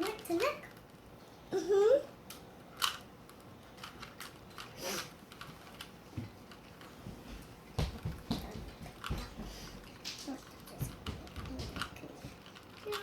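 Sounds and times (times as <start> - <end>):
plastic puzzle cube clicking: 2.8 - 4.7.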